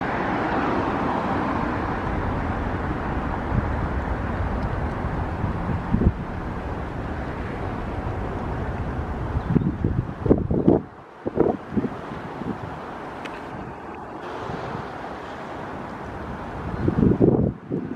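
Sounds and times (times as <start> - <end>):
jet airliner engine rumble: 0.0 - 17.9
wind buffeting microphone: 0.0 - 17.9.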